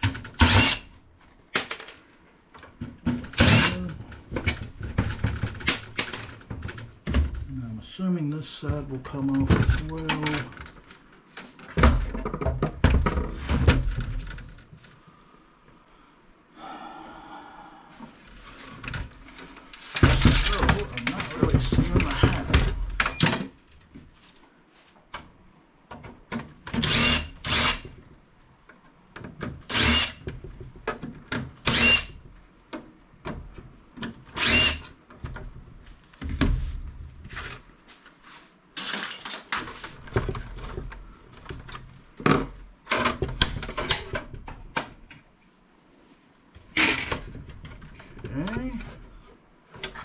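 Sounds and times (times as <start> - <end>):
plastic and metal parts clattering: 2.6 - 7.5, 18.6 - 23.8, 38.8 - 44.9.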